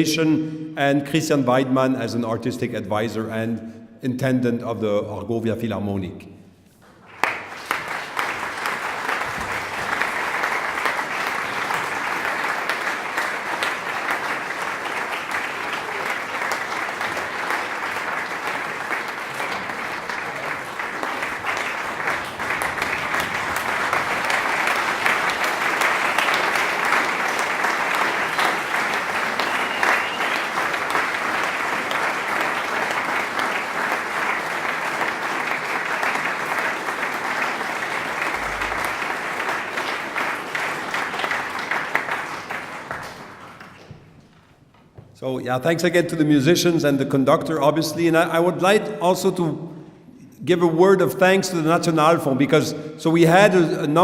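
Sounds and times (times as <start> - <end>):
crowd applauding: 6.8 - 44.9.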